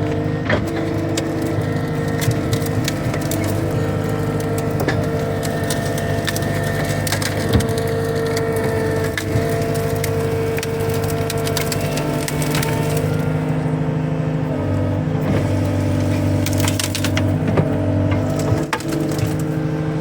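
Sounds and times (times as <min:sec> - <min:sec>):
splintering wood cracks: 0:00.0 - 0:13.5, 0:14.7 - 0:20.0
grapple bucket crushing brush: 0:00.0 - 0:13.7, 0:14.6 - 0:20.0
diesel engine running: 0:00.0 - 0:20.0.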